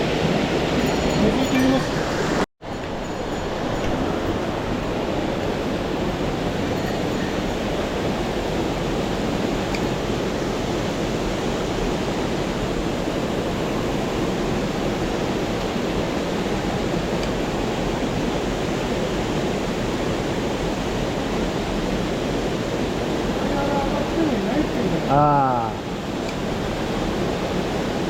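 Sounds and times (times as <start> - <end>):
water rushing over waterfall: 7.9 - 28.0.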